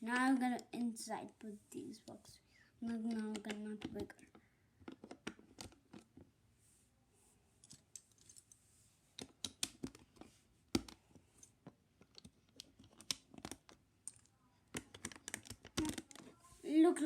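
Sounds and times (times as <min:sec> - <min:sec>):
plastic bricks clicking together: 0:02.9 - 0:06.1, 0:07.6 - 0:08.6, 0:09.2 - 0:10.2, 0:11.6 - 0:16.3.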